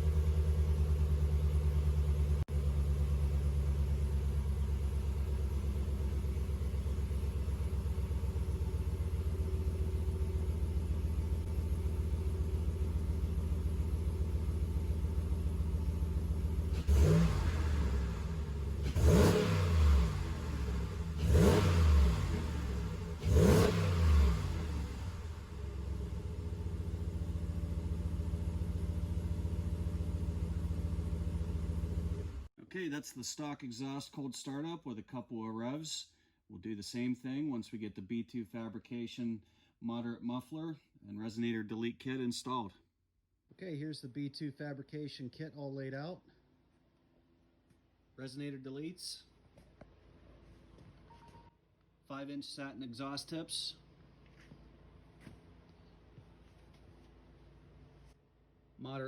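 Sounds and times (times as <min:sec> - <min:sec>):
pickup engine idling and revving: 0:00.0 - 0:32.5.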